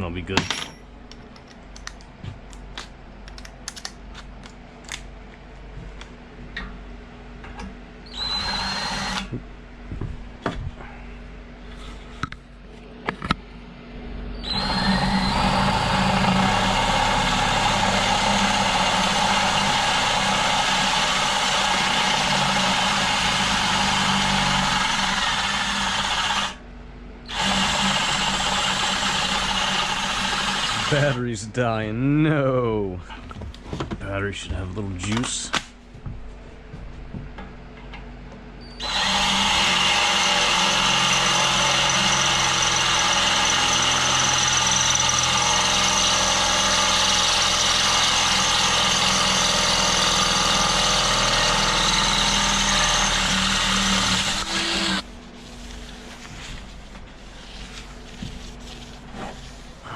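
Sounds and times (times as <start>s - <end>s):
cordless drill boring metal: 8.1s - 9.3s, 14.4s - 26.6s, 27.3s - 31.2s, 38.8s - 55.0s.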